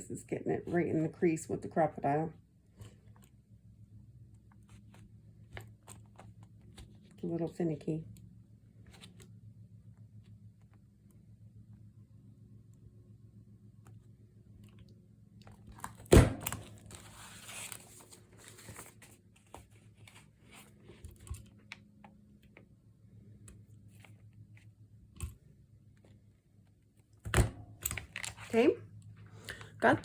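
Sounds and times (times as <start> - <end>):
paper crinkling: 16.6 - 20.8.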